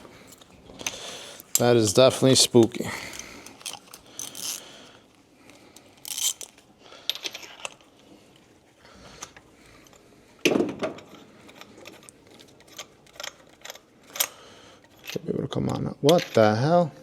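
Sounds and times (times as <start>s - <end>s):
hand tools clicking and scraping: 0.0s - 4.8s, 5.8s - 8.0s, 10.7s - 15.4s.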